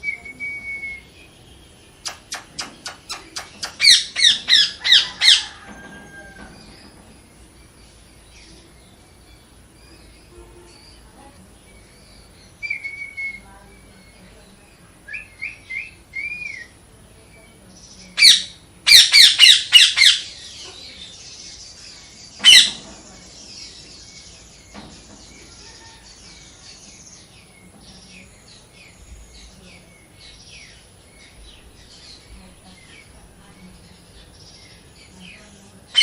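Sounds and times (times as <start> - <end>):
parrot squawking: 2.5 - 5.6, 18.2 - 20.4, 22.4 - 22.8.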